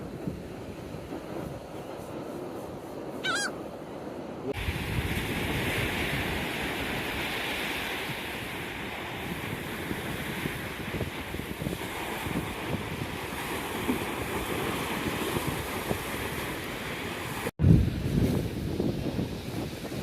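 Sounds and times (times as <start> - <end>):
wind on microphone: 0.0 - 3.6, 4.5 - 20.0
surf washing: 0.0 - 20.0
gull squawk: 3.2 - 3.6.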